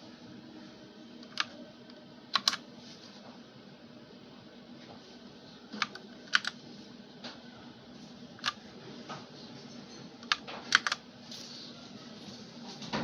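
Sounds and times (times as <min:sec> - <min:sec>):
steady low hum: 0:00.0 - 0:12.8
mechanical keyboard key presses: 0:02.4 - 0:02.6, 0:05.8 - 0:06.5, 0:10.2 - 0:11.0.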